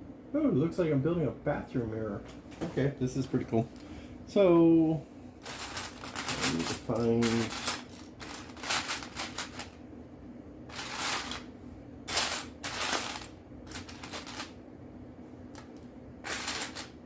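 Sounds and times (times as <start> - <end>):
plastic pieces clicking and clattering: 5.4 - 9.8, 12.1 - 14.6, 15.5 - 17.0.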